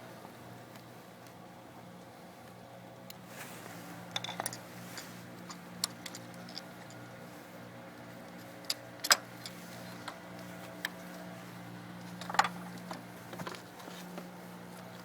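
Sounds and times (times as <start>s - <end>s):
small metal parts clicking: 5.5s - 7.0s.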